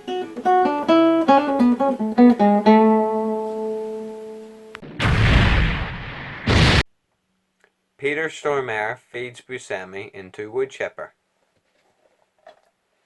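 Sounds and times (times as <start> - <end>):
plucked guitar tune: 0.0 - 4.8.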